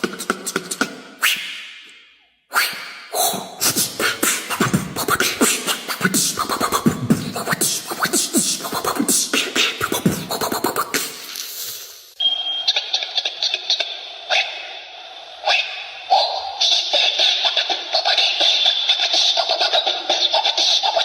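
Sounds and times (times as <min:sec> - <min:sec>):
mouth clicks: 0:00.0 - 0:12.6.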